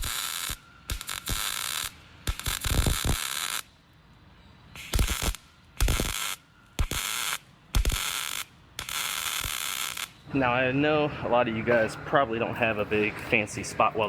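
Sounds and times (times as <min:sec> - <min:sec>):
spot welder thump and hiss: 0:00.0 - 0:03.5, 0:04.8 - 0:10.1.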